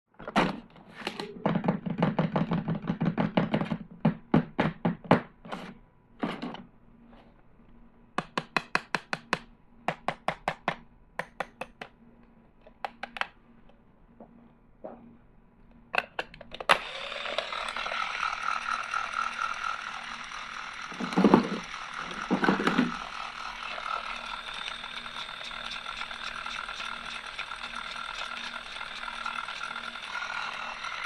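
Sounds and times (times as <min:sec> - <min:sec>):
plastic toy tools clicking: 0:16.0 - 0:31.0.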